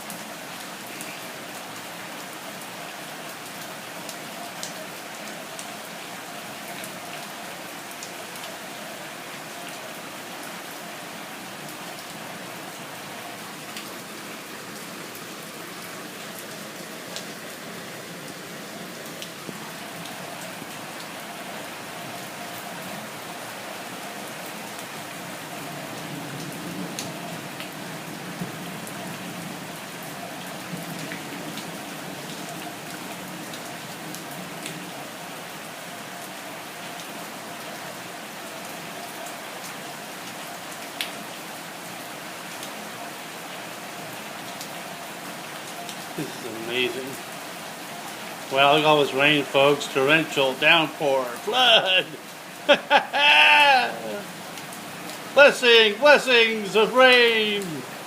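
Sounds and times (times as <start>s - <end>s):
heavy rain pouring: 0.0s - 58.0s
sharp raindrop ticks: 40.8s - 41.2s.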